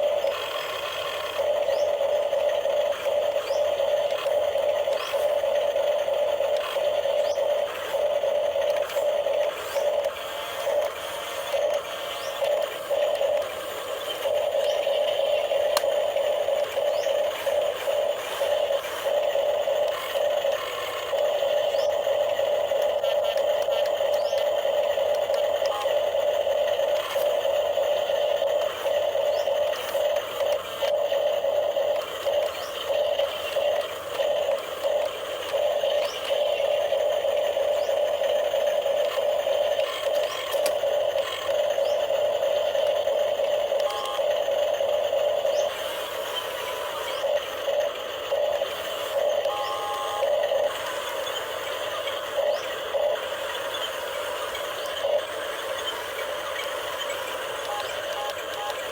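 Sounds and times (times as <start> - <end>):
electric motors whining: 0.0 - 58.9.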